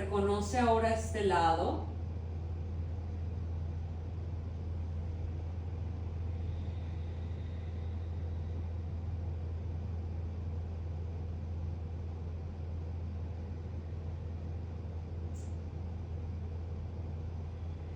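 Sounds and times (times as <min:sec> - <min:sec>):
steady low hum: 0:00.0 - 0:17.9.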